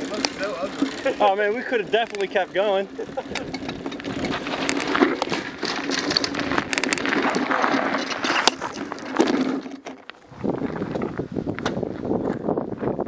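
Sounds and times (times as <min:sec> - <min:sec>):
bike rattling and knocking: 0:00.0 - 0:13.0
tyres and wind hum: 0:00.0 - 0:13.0.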